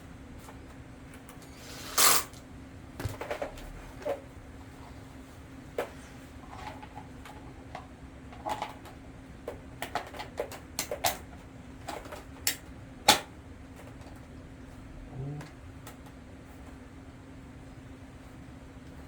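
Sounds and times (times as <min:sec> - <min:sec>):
steady low hum: 0:12.5 - 0:19.0.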